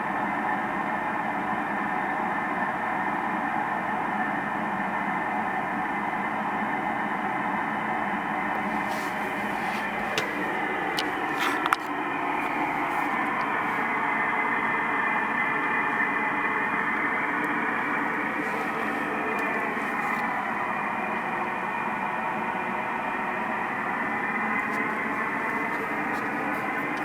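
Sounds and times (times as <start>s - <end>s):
wavering drone from the sky: 8.1s - 27.0s.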